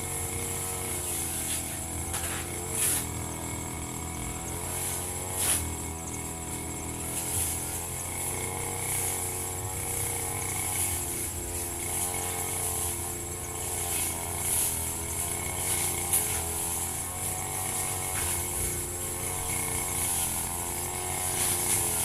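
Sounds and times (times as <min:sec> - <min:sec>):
brush cutter cutting grass: 0:00.0 - 0:22.0.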